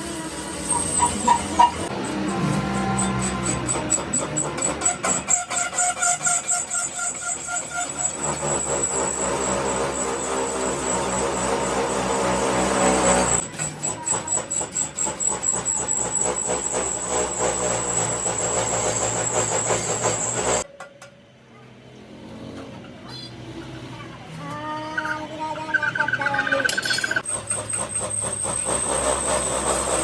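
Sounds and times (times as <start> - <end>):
dump truck engine running: 0.2 - 5.3.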